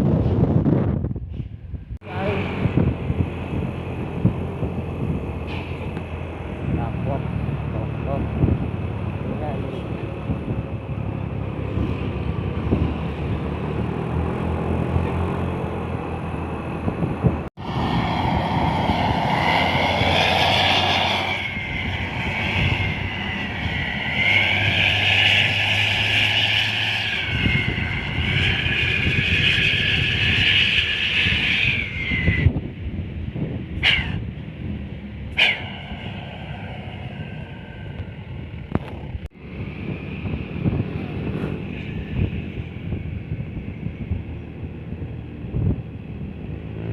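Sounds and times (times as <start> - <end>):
vehicle engine and road rumble: 0.0 - 46.9.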